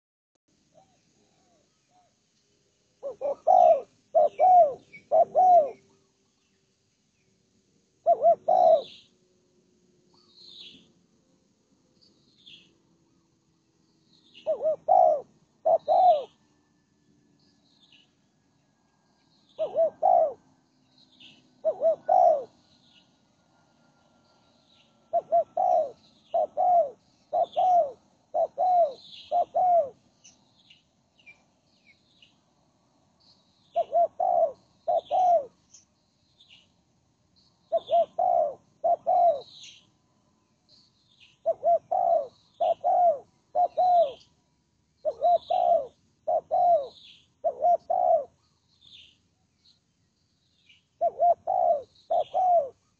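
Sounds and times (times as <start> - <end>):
dove cooing: 3.0 - 6.0, 8.0 - 9.1, 14.3 - 16.4, 19.5 - 20.6, 21.2 - 22.6, 25.0 - 30.0, 33.7 - 35.6, 37.7 - 39.8, 41.4 - 44.3, 45.0 - 48.4, 51.0 - 52.9
small birds chirping: 3.0 - 9.2, 10.1 - 11.0, 11.9 - 52.9.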